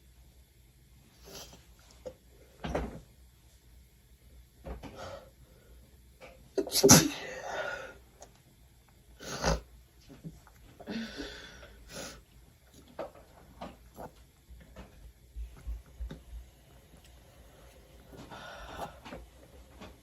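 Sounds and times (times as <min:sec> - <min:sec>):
person sneezing: 0:06.6 - 0:07.8.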